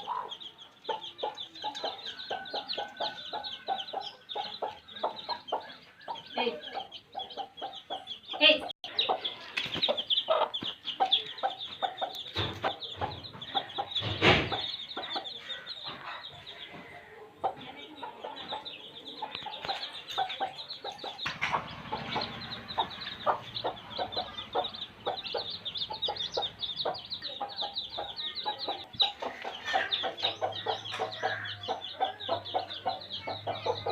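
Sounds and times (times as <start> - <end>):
chicks peeping: 0.0 - 33.9
hen clucking: 0.0 - 33.9
sharp knocks: 12.3 - 14.7.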